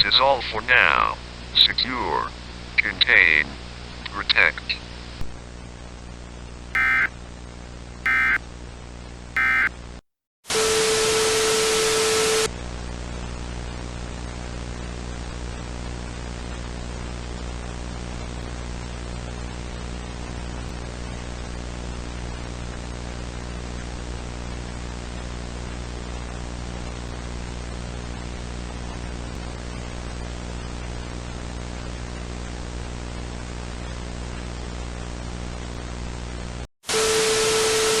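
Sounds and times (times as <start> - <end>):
steady mid-pitched tone: 6.8 - 7.1, 8.1 - 8.4, 9.4 - 9.7.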